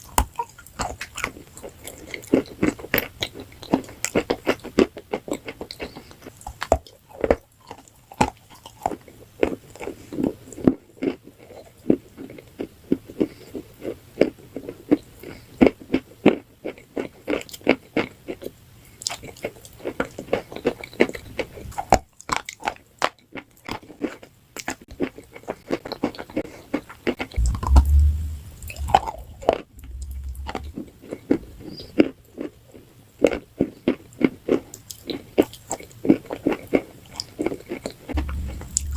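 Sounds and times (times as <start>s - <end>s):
crunching dry food: 0.0s - 38.9s
low rumble: 27.4s - 31.7s, 38.1s - 38.9s.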